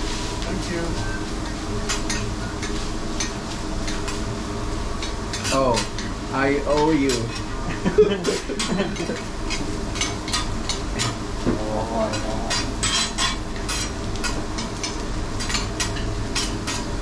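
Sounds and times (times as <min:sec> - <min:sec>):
rice sizzling on a griddle: 0:00.0 - 0:17.0
metal spatulas scraping and tapping: 0:01.8 - 0:04.2, 0:05.0 - 0:06.1, 0:06.7 - 0:07.5, 0:08.2 - 0:11.2, 0:12.1 - 0:16.9.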